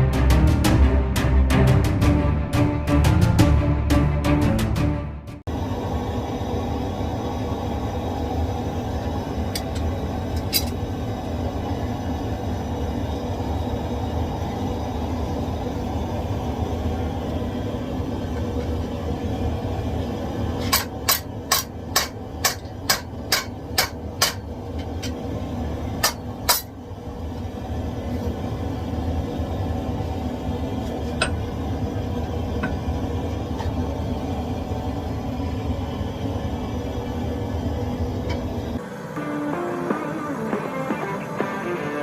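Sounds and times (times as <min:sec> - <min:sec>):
hammer striking metal anvil: 0:20.7 - 0:25.1, 0:26.0 - 0:26.7.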